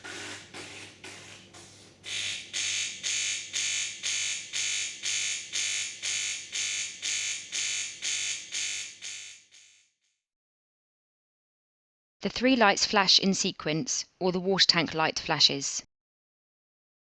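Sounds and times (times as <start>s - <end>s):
coffee machine pump buzzing: 0.0s - 8.4s.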